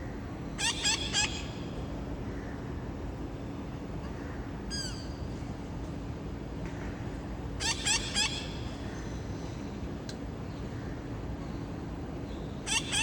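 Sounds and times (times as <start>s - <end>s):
low background noise: 0.0s - 13.0s
parrots squawking: 12.7s - 13.0s.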